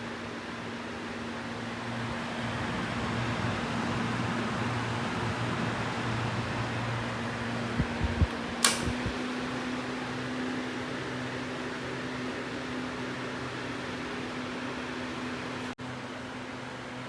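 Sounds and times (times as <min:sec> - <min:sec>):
box fan running: 0:00.0 - 0:17.0
sharp click: 0:08.6 - 0:09.1.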